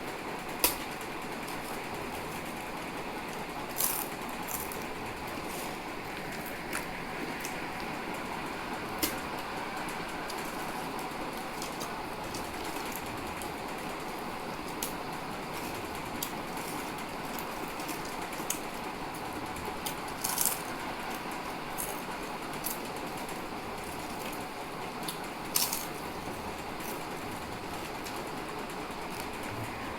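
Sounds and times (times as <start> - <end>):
potato chips crunching: 3.7 - 5.5.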